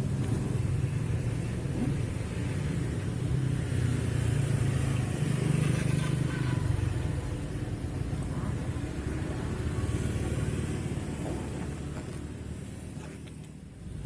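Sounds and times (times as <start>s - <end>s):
vehicle engine humming: 0.0s - 14.0s.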